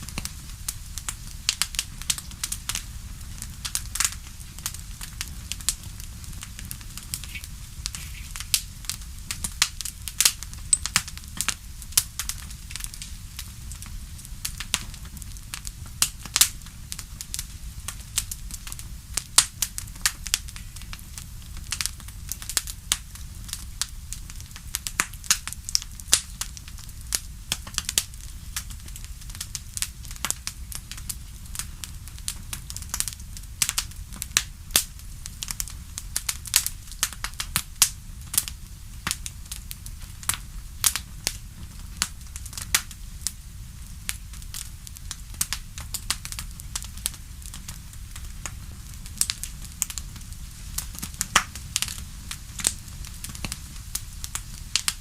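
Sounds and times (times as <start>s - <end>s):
fireplace fire crackling: 0.0s - 55.0s
sharp pops and snaps: 3.6s - 13.1s.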